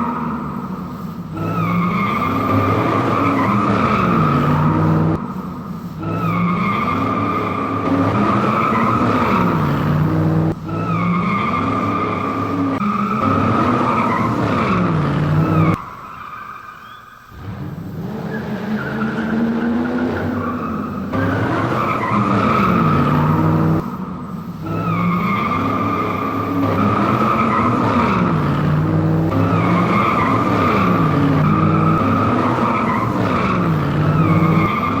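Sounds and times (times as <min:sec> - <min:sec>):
car engine revving: 0:00.0 - 0:15.8, 0:17.3 - 0:35.0
tyres screeching: 0:24.7 - 0:35.0.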